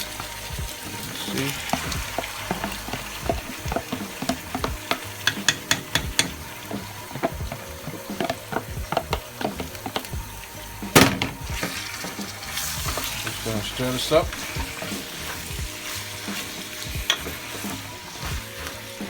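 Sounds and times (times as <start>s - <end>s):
food sizzling in oil: 0.0s - 19.0s
utensil scraping a pan: 0.0s - 19.0s.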